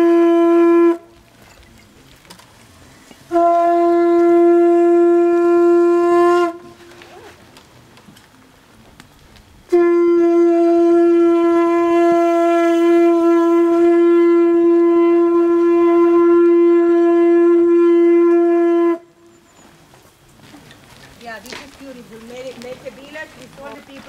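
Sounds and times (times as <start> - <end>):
long horn note: 0.0 - 1.2, 3.3 - 7.3, 9.7 - 19.3.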